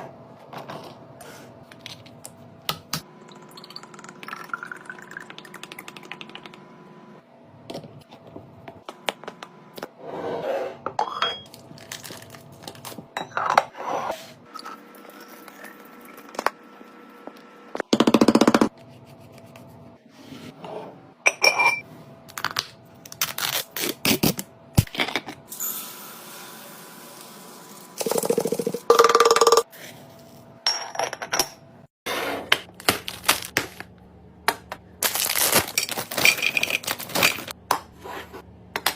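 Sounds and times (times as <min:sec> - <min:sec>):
dishes clinking and scraping: 0:20.6 - 0:21.8.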